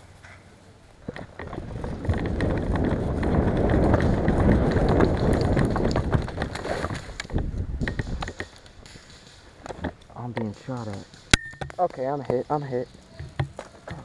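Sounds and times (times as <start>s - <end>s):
gear jostling: 1.0s - 14.0s
running footsteps: 1.0s - 14.0s
wind buffeting microphone: 1.1s - 8.5s.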